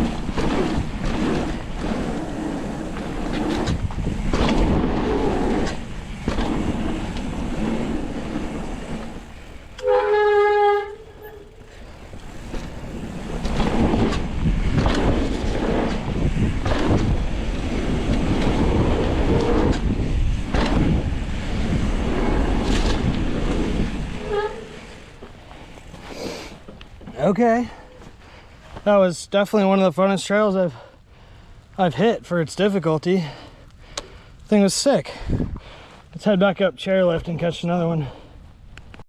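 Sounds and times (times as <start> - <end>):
wind on microphone: 0.0 - 25.2, 35.3 - 35.7
bike rattling over bumps: 0.0 - 26.7
bike tyres on dirt: 0.0 - 29.0.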